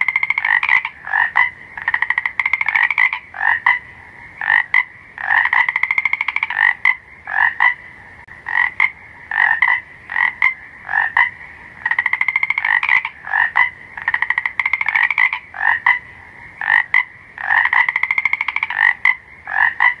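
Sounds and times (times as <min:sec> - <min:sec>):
faint hiss: 0:00.0 - 0:20.0
frogs croaking and trilling: 0:00.0 - 0:20.0.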